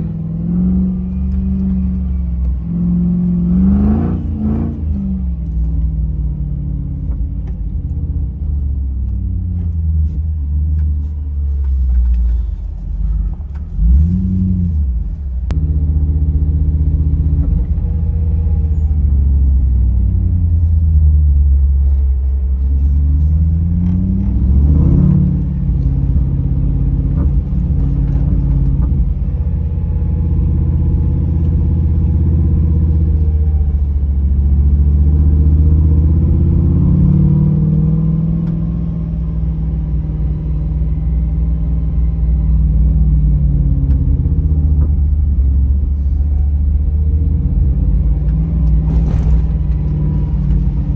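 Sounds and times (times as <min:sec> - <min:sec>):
car engine revving: 0:00.0 - 0:21.0, 0:21.7 - 0:50.9.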